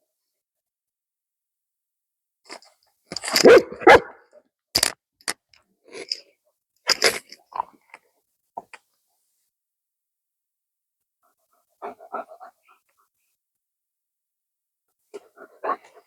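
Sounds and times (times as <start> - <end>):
dog barking: 3.4 - 4.3, 11.8 - 12.5, 15.3 - 16.0.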